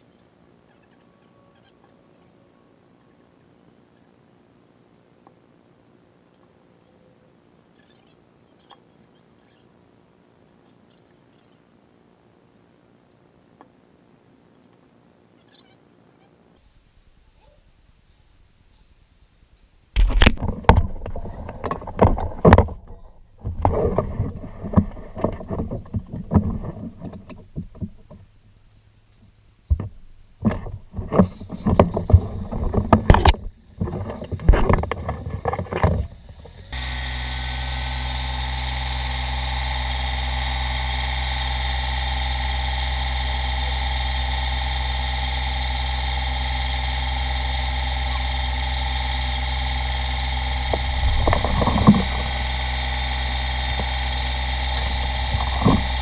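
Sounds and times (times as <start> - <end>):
irregular scraping and knocking: 20.0 - 28.3, 29.7 - 36.7, 50.6 - 52.5, 54.6 - 56.0
engine running steadily: 20.0 - 56.0.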